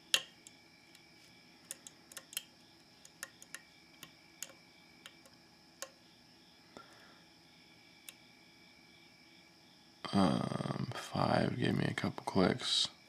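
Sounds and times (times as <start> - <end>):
lock pick clicking in padlock: 1.7 - 3.6.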